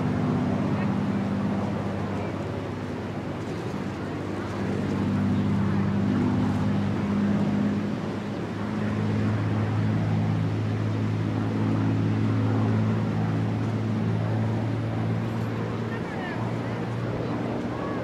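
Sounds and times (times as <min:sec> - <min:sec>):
propeller plane engine droning: 0:00.0 - 0:18.0.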